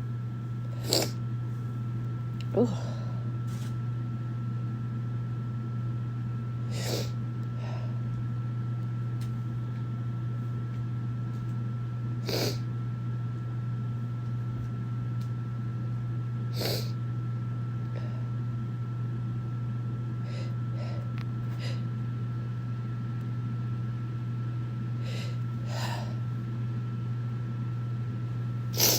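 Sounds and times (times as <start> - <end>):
steady low hum: 0.0 - 28.9
sniffs through congested nose: 0.7 - 1.2, 6.7 - 7.2, 12.2 - 12.6, 16.6 - 17.0.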